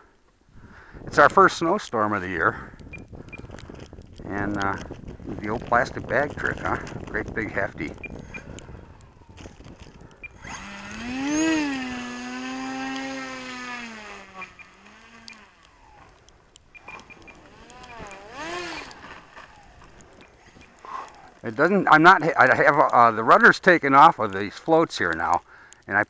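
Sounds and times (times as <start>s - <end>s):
electric motor and propeller whine: 2.3s - 22.6s.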